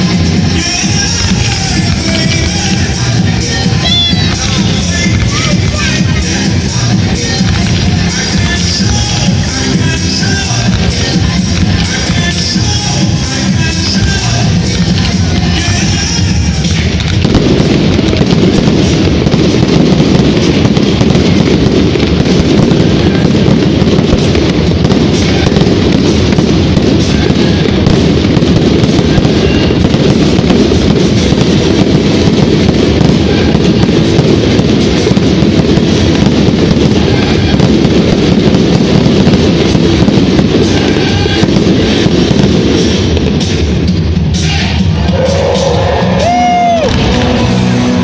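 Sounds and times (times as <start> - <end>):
fireworks bursting: 0.0 - 48.0.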